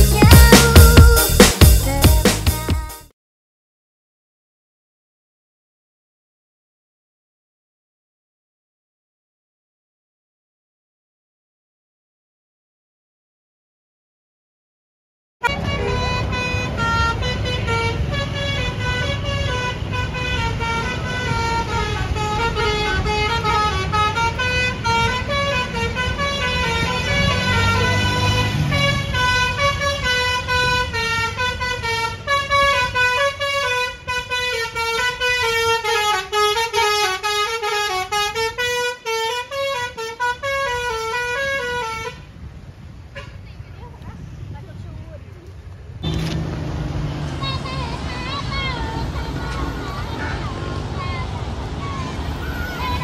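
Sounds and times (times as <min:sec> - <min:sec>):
multi-trumpet bus air horn melody: 0:15.4 - 0:42.4, 0:46.0 - 0:53.0
low engine rumble: 0:15.4 - 0:53.0.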